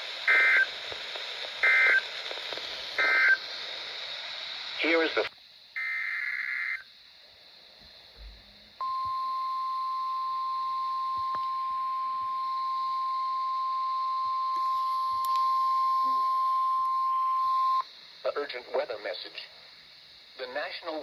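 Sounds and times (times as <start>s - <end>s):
steady alarm beep: 8.8s - 17.8s.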